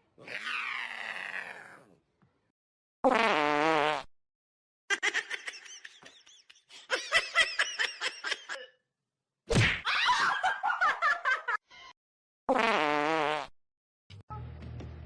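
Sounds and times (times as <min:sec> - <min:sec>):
sharp thud: 0:09.5 - 0:09.9.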